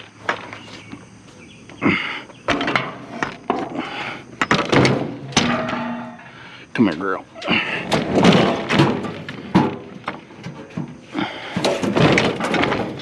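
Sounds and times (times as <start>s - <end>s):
metal bed frame clanking: 2.5s - 3.8s, 4.4s - 13.0s.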